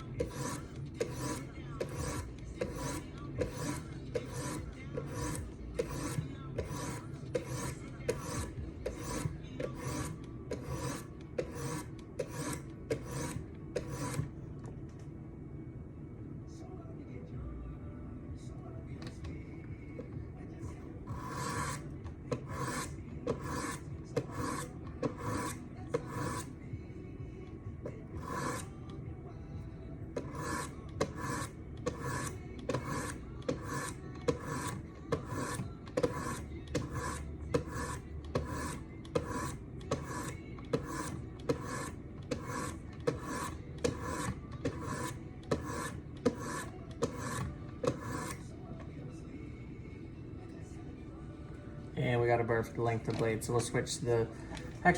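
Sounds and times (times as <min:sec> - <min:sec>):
sharpening stone scraping knife blade: 0:00.2 - 0:14.2, 0:21.2 - 0:21.8, 0:22.4 - 0:26.5, 0:28.2 - 0:28.7, 0:30.2 - 0:48.4.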